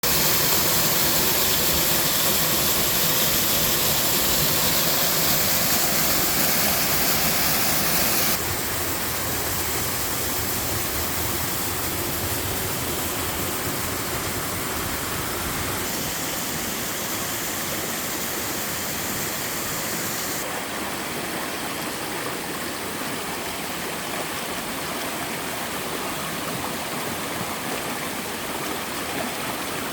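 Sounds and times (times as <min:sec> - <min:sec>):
waterfall rushing: 0:00.0 - 0:24.6.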